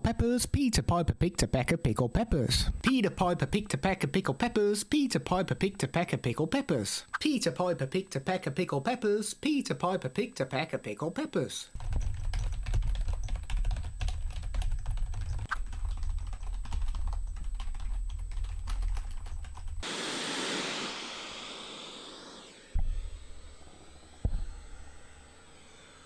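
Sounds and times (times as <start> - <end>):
keyboard typing: 11.8 - 19.8
loud rushing hiss: 19.8 - 23.4.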